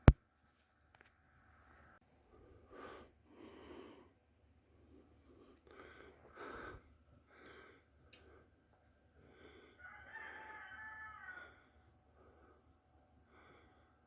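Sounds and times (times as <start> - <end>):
rooster crowing: 9.7 - 11.8.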